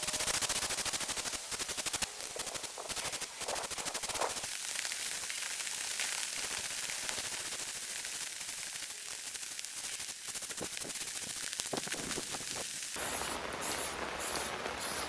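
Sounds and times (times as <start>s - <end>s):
aerosol can spraying hiss: 9.3s - 15.0s.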